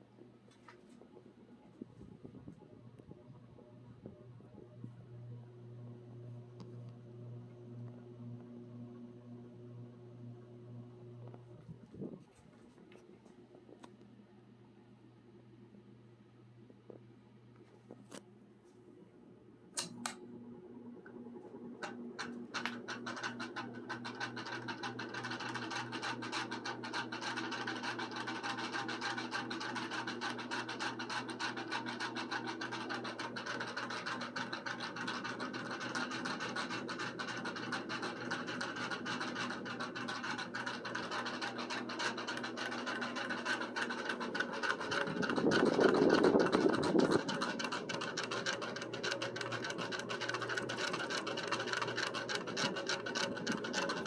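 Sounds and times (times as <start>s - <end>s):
ceiling fan motor hum: 0.0s - 54.0s
fan switch clicks: 19.8s - 20.2s
rapid ticking and scratching: 22.9s - 54.0s.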